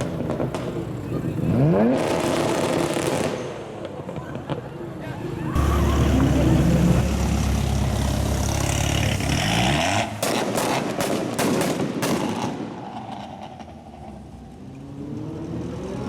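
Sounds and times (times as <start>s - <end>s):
car engine revving: 5.6s - 10.9s.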